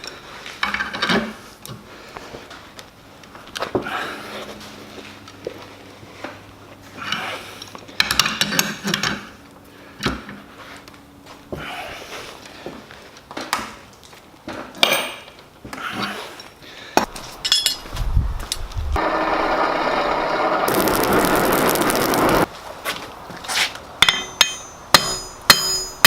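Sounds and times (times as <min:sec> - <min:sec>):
metallic rings: 0:17.4 - 0:17.9, 0:24.0 - 0:26.0
steel tools clinking: 0:17.4 - 0:17.9, 0:24.0 - 0:26.0.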